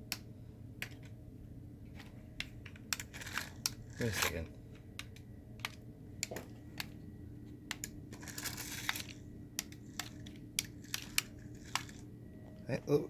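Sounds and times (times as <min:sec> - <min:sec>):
small plastic clicks: 0:02.4 - 0:04.3, 0:07.7 - 0:12.1.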